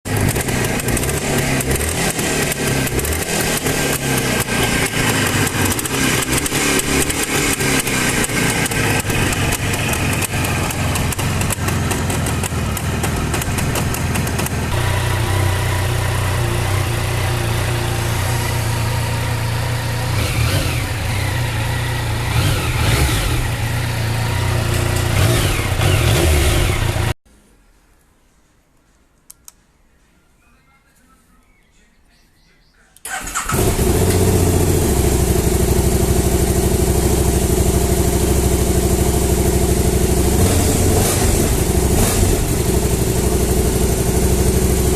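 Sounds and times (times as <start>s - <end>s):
motorcycle engine revving: 0.1s - 27.2s, 33.1s - 44.9s.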